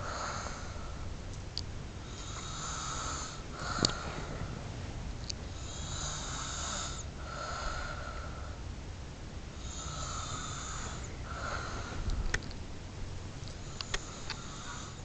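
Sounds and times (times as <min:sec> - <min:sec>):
person snoring: 0:00.0 - 0:01.0, 0:02.0 - 0:04.5, 0:05.5 - 0:08.6, 0:09.6 - 0:12.2, 0:13.6 - 0:15.0.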